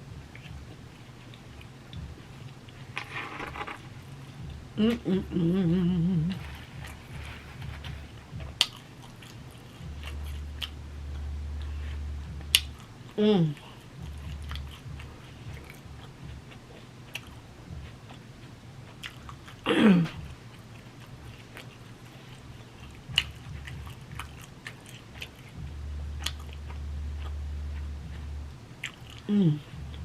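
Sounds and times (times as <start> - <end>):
person humming mm: 4.8 - 7.0, 29.3 - 29.8
person chewing food: 6.4 - 9.3.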